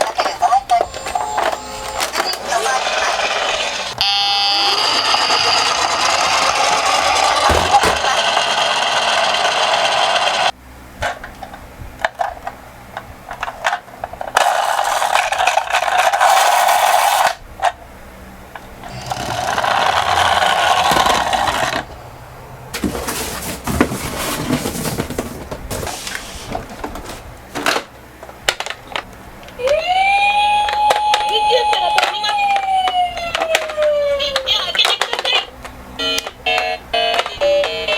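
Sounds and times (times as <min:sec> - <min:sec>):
toy cars rolling: 0:00.0 - 0:10.5, 0:13.3 - 0:17.8, 0:18.8 - 0:21.9.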